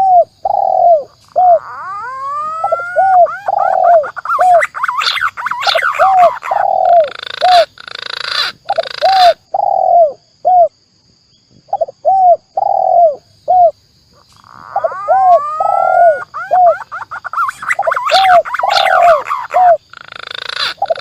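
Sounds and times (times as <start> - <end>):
dove cooing: 0.0 - 10.7, 11.7 - 21.0
pigeon whistling glides: 14.8 - 19.3.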